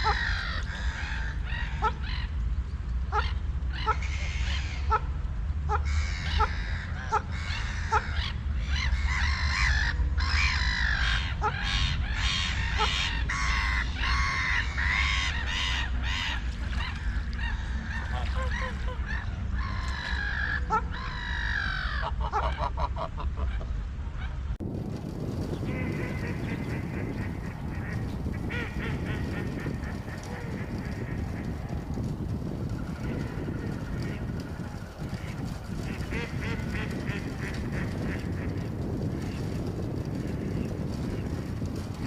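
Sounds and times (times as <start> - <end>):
steady low rumble: 0.0 - 42.0
ducks quacking: 9.2 - 23.8, 25.5 - 39.6.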